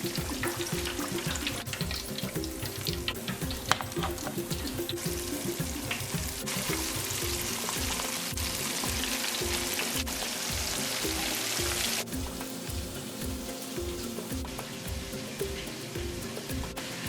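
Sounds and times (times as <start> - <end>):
background music with steady beat: 0.0 - 17.0
fish sizzling in hot oil: 0.0 - 17.0.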